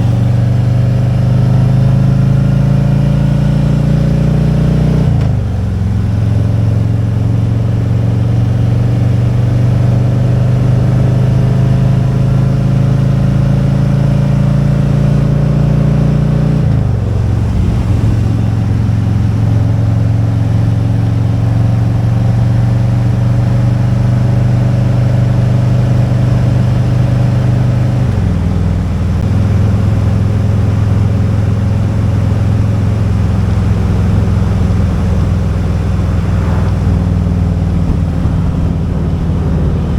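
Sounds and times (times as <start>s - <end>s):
motorcycle engine running: 0.0s - 39.9s
road noise: 0.0s - 39.9s
wind noise: 16.6s - 20.6s, 33.2s - 39.9s.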